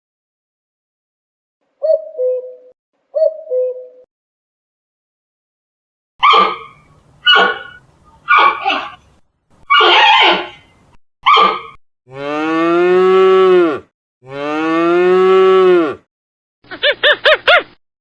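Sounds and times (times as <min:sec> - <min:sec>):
dog barking: 0:06.2 - 0:09.0, 0:09.7 - 0:10.6, 0:11.2 - 0:11.8
short rising-and-falling animal calls: 0:06.2 - 0:09.0, 0:09.7 - 0:10.7
cow mooing: 0:12.1 - 0:16.0.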